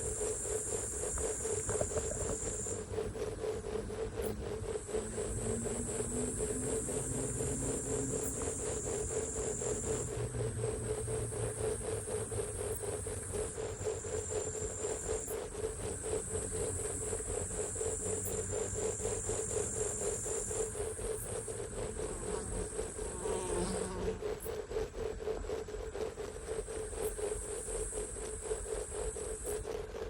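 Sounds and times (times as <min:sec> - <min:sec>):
insect pulsing buzz: 0:00.0 - 0:30.0
insect high-pitched trill: 0:04.2 - 0:25.8.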